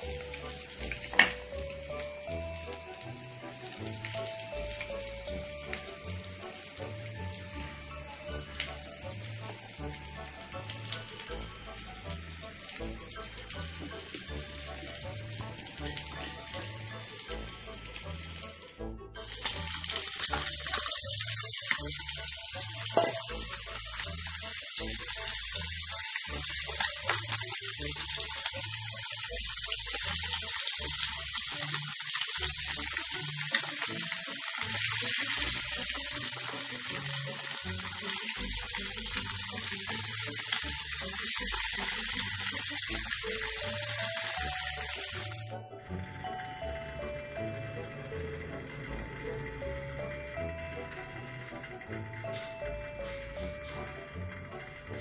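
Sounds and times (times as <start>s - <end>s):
loud steady kitchen hiss: 0.0s - 55.0s
music with steady beat: 36.5s - 55.0s.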